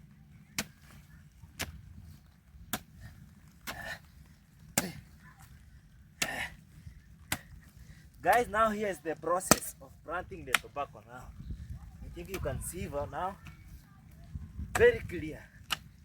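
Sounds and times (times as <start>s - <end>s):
hand hoe chopping into soil: 0.4s - 5.5s, 6.2s - 6.5s, 7.2s - 8.5s, 9.3s - 9.8s, 10.4s - 10.8s, 14.7s - 15.9s.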